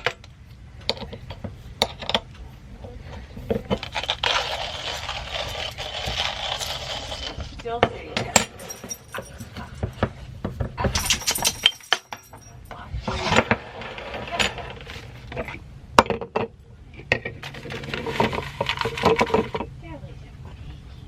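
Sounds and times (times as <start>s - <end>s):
small hard objects clinking: 3.7s - 7.6s, 8.4s - 10.0s, 10.8s - 12.8s.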